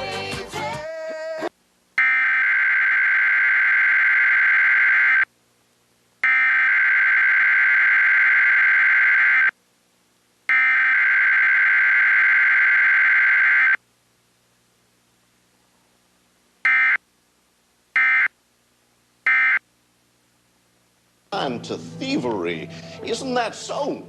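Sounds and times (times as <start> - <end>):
digital data tone bursts: 2.0 - 5.3, 6.2 - 9.5.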